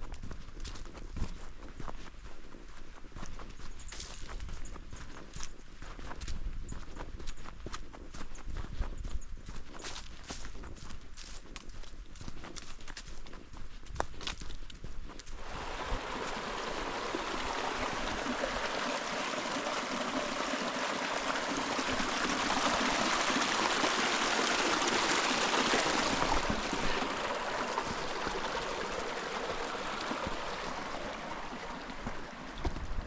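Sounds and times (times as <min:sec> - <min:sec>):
creek water rushing: 0:15.4 - 0:33.0.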